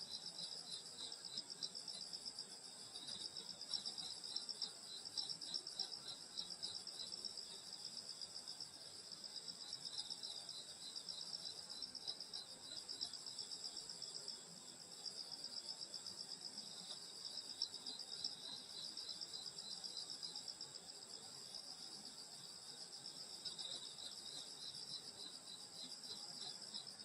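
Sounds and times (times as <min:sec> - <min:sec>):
crickets and insects chirping: 0:00.0 - 0:27.0.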